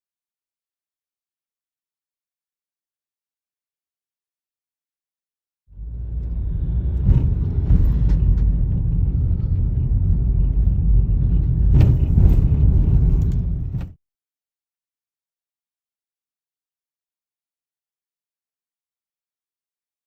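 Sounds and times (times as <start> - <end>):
loud low rumbling: 5.7 - 14.0
sharp clicks and knocks: 6.2 - 14.0.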